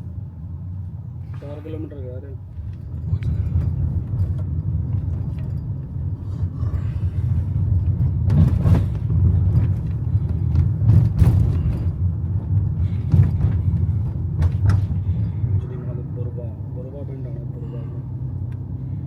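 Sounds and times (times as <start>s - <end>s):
road and engine rumble in car: 0.0s - 19.0s.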